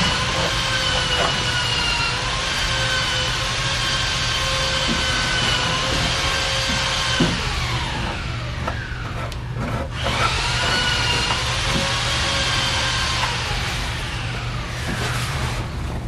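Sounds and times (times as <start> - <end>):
small electric motor running: 9.9 - 14.9.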